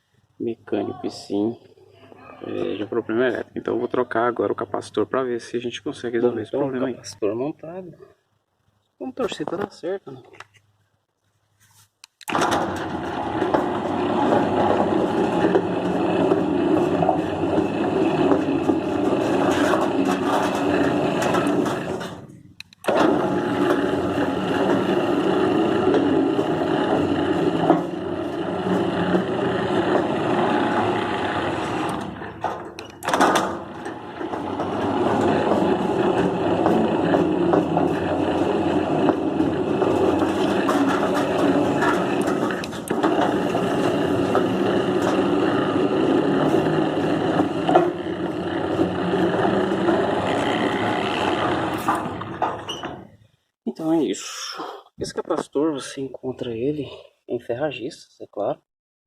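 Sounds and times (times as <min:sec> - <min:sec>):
gate opener motor running: 0:12.2 - 0:53.2.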